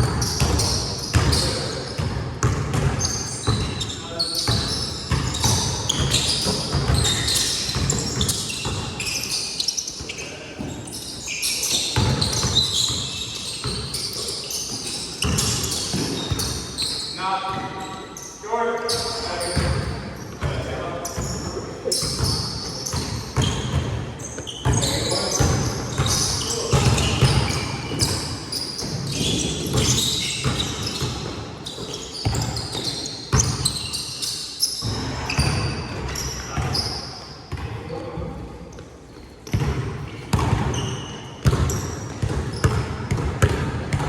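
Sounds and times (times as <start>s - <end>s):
basketball bouncing on court: 0.0s - 11.0s, 11.7s - 17.9s, 18.9s - 34.0s, 34.8s - 37.9s, 39.4s - 44.0s
high-pitched shoe squeaks: 3.0s - 19.7s, 21.2s - 37.2s.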